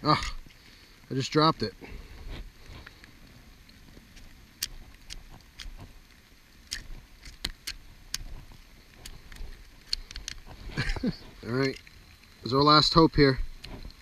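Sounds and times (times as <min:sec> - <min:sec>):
raindrops ticking close by: 0:00.0 - 0:14.0
heavy rain: 0:10.4 - 0:13.8.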